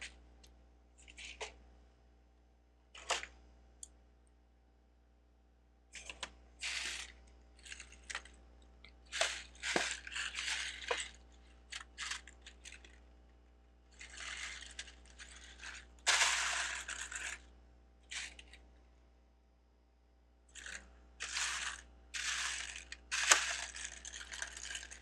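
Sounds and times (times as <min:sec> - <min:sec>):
plastic bricks clattering: 0:09.1 - 0:13.0, 0:14.0 - 0:17.5, 0:20.6 - 0:25.0.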